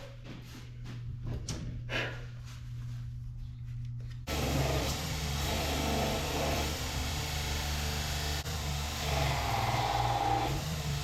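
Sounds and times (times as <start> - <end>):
low steady hum: 0.0 - 4.3
electric angle grinder running: 4.3 - 11.0.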